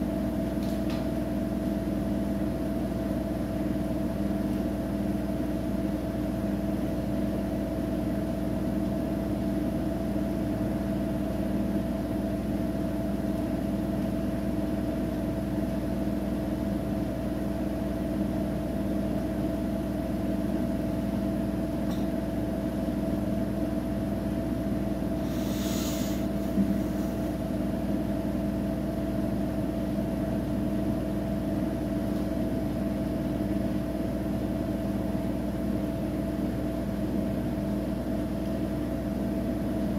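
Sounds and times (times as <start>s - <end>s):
washing machine spinning: 0.0s - 39.9s
short hiss: 25.3s - 26.4s.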